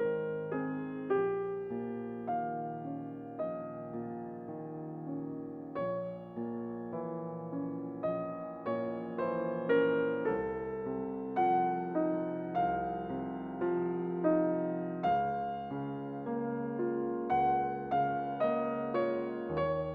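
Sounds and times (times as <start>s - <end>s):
soft piano chords: 0.0s - 19.9s.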